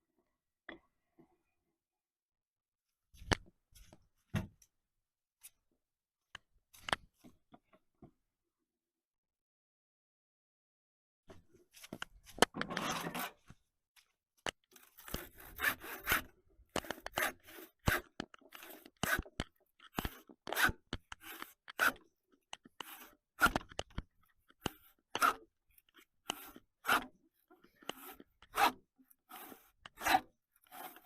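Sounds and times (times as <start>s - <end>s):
hand file rasping on metal: 15.0s - 31.0s.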